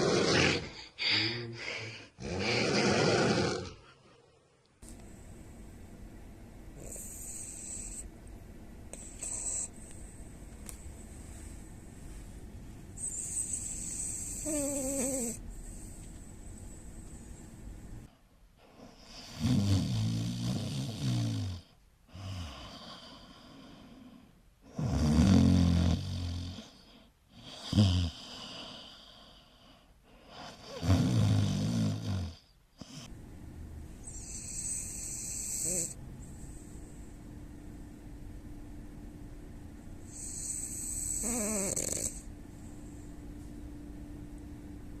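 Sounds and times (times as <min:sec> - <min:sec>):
loud buzzy snores: 0:00.0 - 0:01.6, 0:02.2 - 0:03.9, 0:06.8 - 0:08.1, 0:09.0 - 0:09.8, 0:13.0 - 0:15.4, 0:18.8 - 0:24.1, 0:24.7 - 0:26.8, 0:27.4 - 0:29.2, 0:30.4 - 0:33.1, 0:34.0 - 0:36.0, 0:40.1 - 0:42.3.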